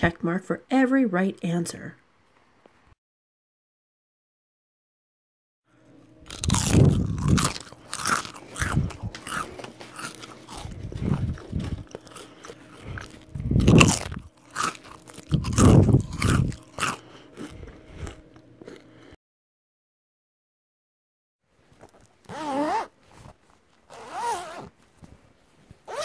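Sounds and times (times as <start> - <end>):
person chewing crunchy food: 6.1 - 19.2.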